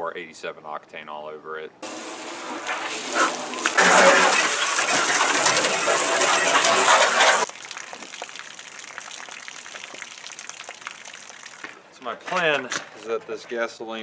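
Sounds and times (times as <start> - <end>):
hose spraying water into glass tank: 1.8 - 8.3.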